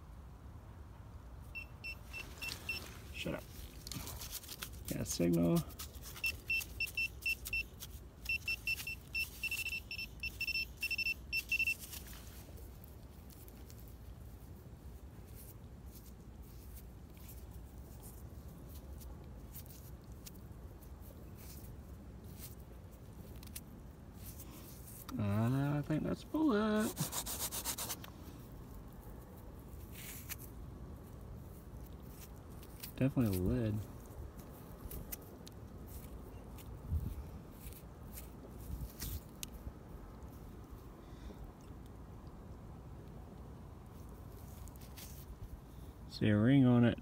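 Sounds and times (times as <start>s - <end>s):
low outdoor rumble: 0.0s - 26.9s, 28.0s - 47.0s
metal detector beeps: 1.5s - 2.9s, 6.2s - 11.8s
fingers rubbing dirt off bullet: 26.8s - 28.2s.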